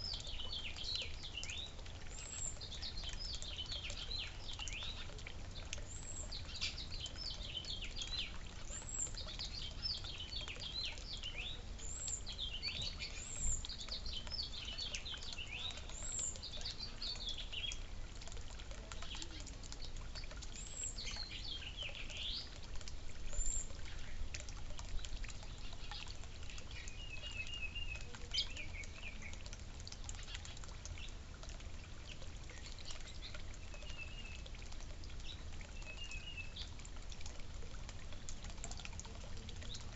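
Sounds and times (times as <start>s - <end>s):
fountain water trickling: 0.0s - 39.9s
small songbirds chirping: 0.0s - 39.9s.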